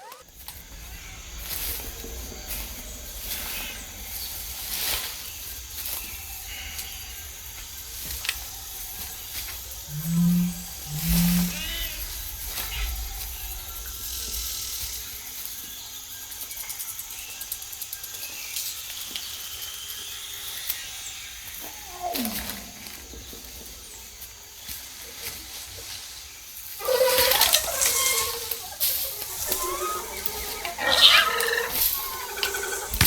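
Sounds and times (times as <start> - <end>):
insects chirring: 0.0 - 33.0
falling animal growl: 8.7 - 15.1, 21.7 - 23.5, 26.8 - 33.0
creature snarls and calls: 9.8 - 14.8, 21.6 - 23.1, 26.8 - 33.0.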